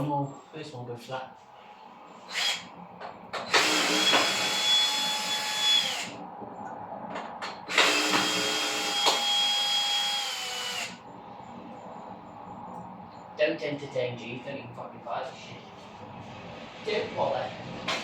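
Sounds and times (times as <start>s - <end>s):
cordless drill whining: 2.3s - 2.7s, 3.5s - 6.2s, 7.7s - 11.0s.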